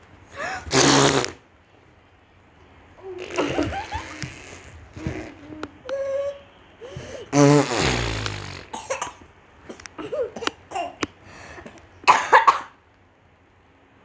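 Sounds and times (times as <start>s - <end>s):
girl buzzing mouth sound: 0.4s - 1.4s, 3.0s - 6.5s, 7.3s - 8.9s
girl laughing: 3.2s - 6.5s
mouth clicks: 7.3s - 8.8s.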